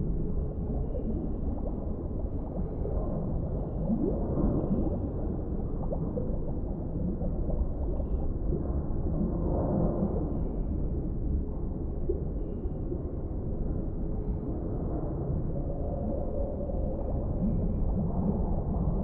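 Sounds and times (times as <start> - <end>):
muffled gurgling wash: 0.0 - 19.0
underwater deep rumble: 0.0 - 19.0.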